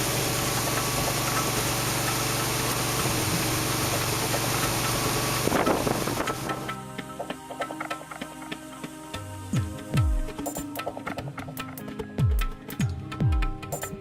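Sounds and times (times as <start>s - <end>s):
combine harvester engine hum: 0.0s - 7.5s
broad mechanical hiss: 0.0s - 11.9s.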